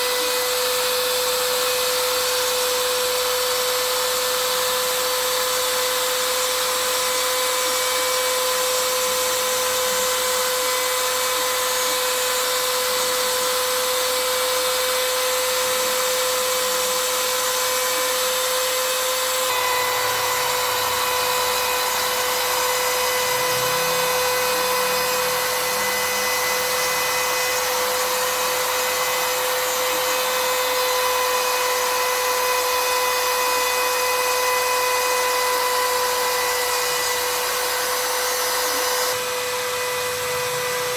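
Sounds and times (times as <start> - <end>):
router spindle motor whining: 0.0 - 40.9
hiss of cutting: 16.4 - 31.7.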